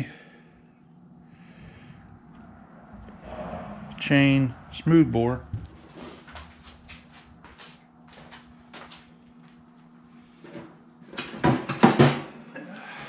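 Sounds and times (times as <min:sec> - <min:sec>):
faint steady hum: 0:00.0 - 0:11.2.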